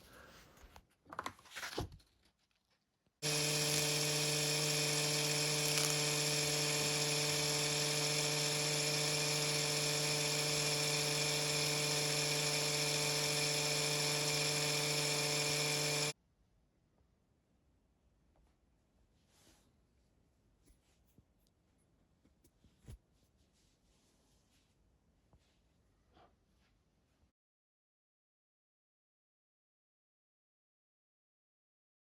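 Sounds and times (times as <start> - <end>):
electric drill running: 3.2 - 16.2.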